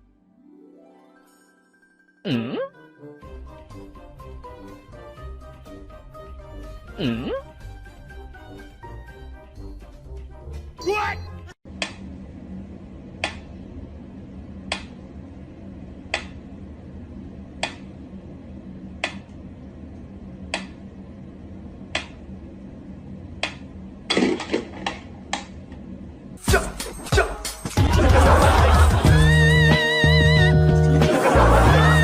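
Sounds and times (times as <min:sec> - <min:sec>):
low steady hum: 0:11.7 - 0:26.4.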